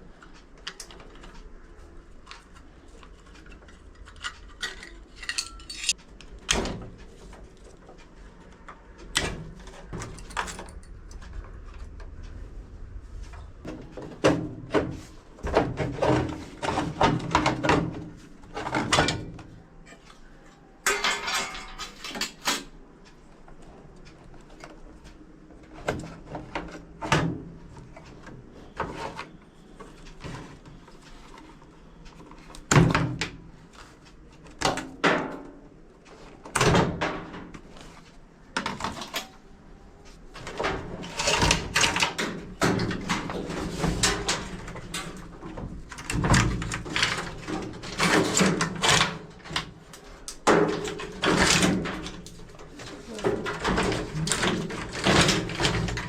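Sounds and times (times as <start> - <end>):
knocks and clatter of hands working: 13.6 - 20.1, 32.5 - 39.3, 40.3 - 56.0.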